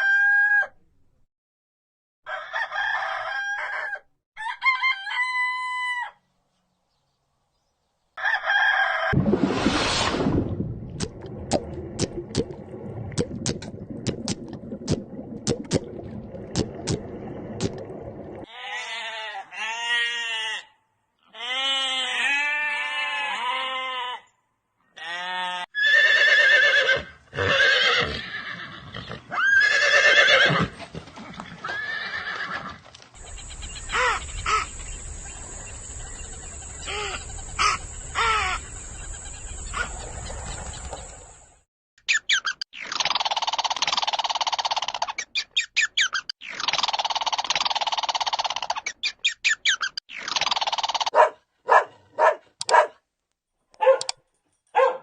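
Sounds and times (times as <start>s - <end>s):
horse whinnying: 25.6s - 32.8s.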